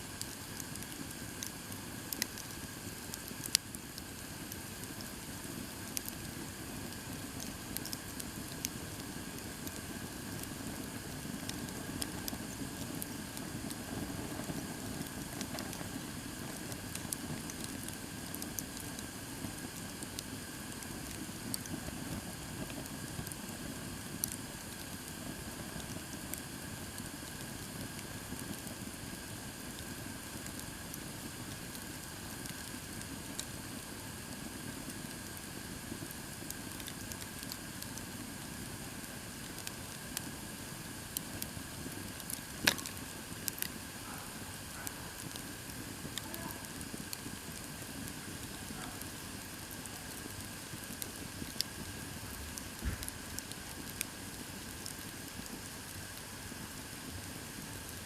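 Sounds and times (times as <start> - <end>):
campfire crackling and popping: 0.1 - 58.0.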